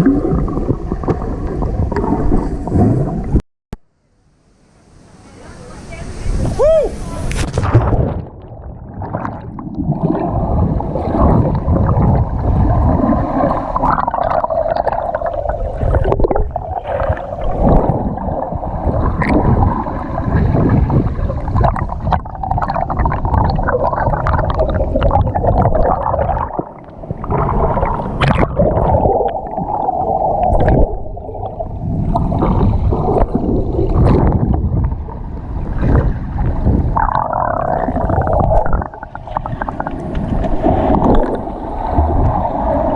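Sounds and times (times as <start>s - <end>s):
underwater churning rumble: 0.0s - 3.4s, 7.2s - 42.9s
water gurgling and bubbling: 0.0s - 3.4s, 7.2s - 42.9s
short knocks underwater: 7.3s - 14.0s.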